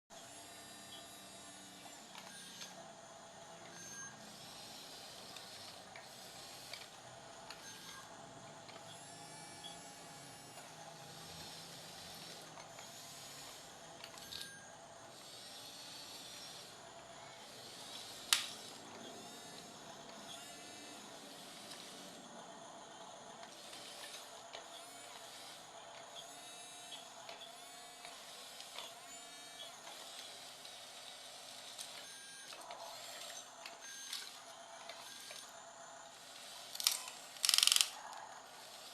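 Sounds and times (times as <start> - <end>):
toy electric motor whirring: 0.1 - 38.9.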